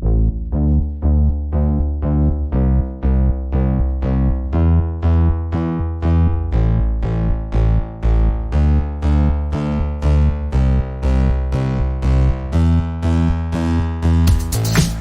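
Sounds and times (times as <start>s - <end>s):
deep bass line: 0.0s - 15.0s
synthesizer repeating pattern: 3.8s - 15.0s.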